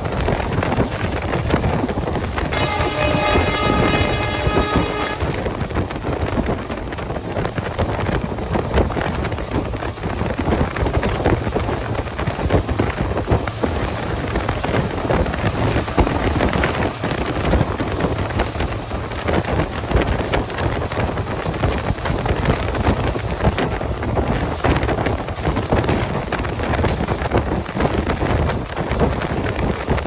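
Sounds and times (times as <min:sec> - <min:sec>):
train coach rumble on track: 0:00.0 - 0:30.0
wind buffeting microphone: 0:00.0 - 0:30.0.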